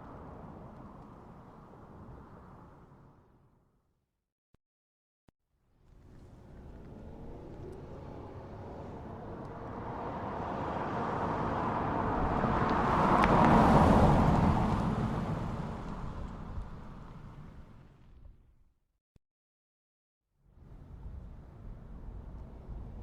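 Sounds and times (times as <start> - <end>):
car driving past: 5.9 - 18.3.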